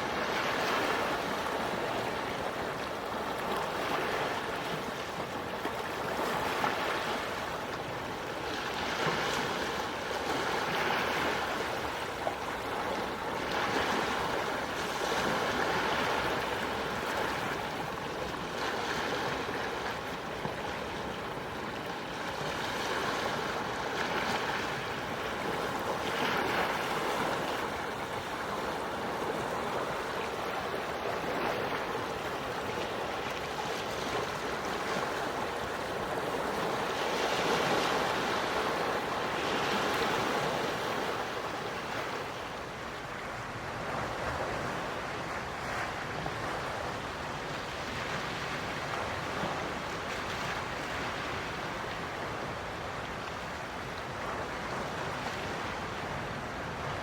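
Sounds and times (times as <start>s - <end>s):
ocean waves washing ashore: 0.0s - 57.0s.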